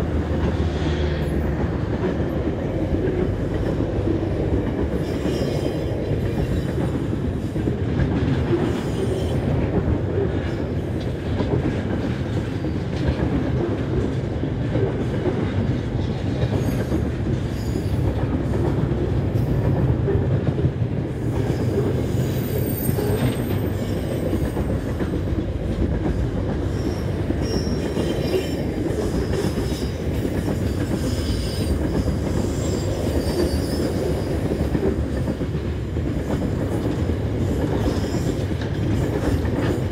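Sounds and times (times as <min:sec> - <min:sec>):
freight train wagons rumbling on rails: 0:00.0 - 0:39.9
high-pitched wheel squeal: 0:26.8 - 0:28.6, 0:32.4 - 0:34.2.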